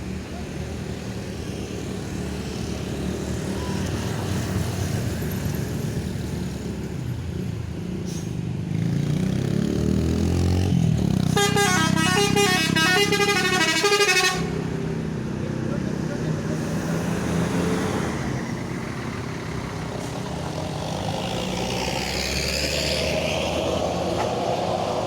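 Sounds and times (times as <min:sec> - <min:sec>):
bus engine rumble: 0:00.0 - 0:08.8, 0:10.6 - 0:25.0
bus horn playing melody: 0:11.3 - 0:14.8.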